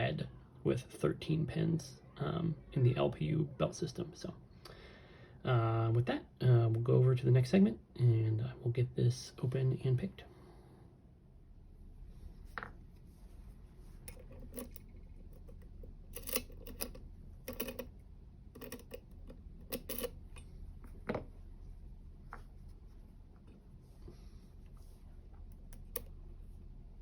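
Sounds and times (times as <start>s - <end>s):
lock picking tools clicking: 14.1s - 18.0s, 18.6s - 20.5s, 25.7s - 26.1s.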